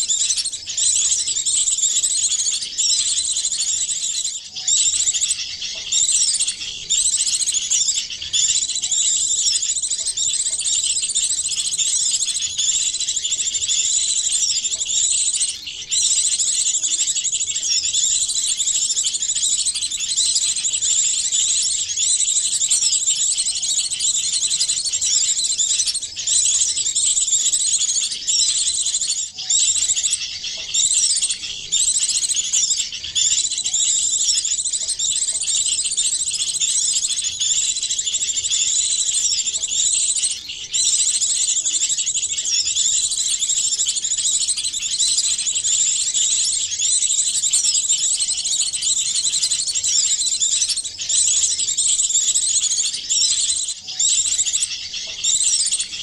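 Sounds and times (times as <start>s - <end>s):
small songbirds chirping: 0.0s - 56.0s.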